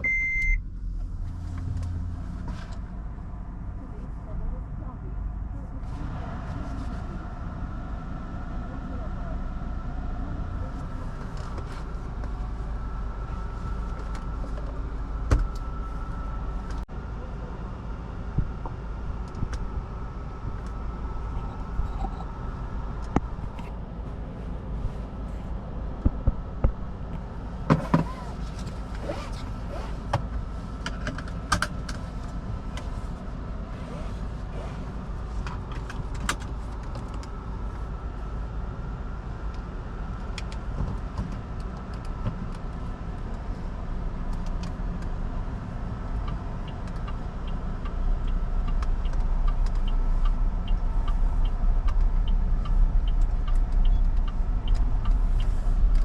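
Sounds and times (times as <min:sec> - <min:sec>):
low rumble of car driving off: 0:00.0 - 0:56.0
clicks and knocks of car controls: 0:26.0 - 0:29.3
light regular ticking: 0:44.3 - 0:56.0.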